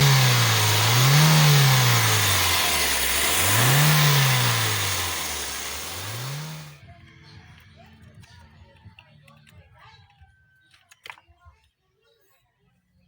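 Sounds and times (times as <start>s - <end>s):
car engine revving: 0.0s - 6.8s.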